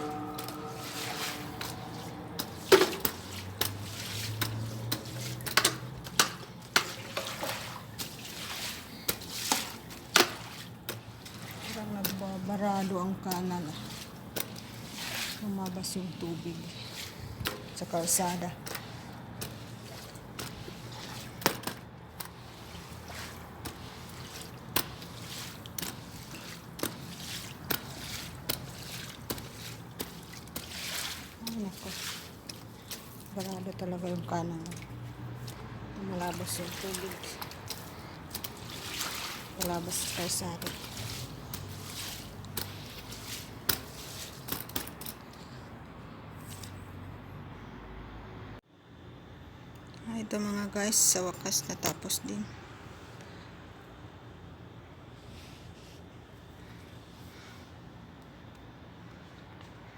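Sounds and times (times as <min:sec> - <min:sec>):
garden hose water splashing: 0:00.0 - 0:47.0.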